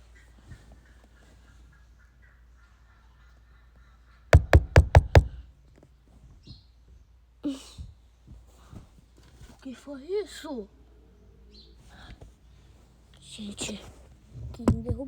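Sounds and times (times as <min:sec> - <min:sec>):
loud knocks on car: 0:04.4 - 0:05.4.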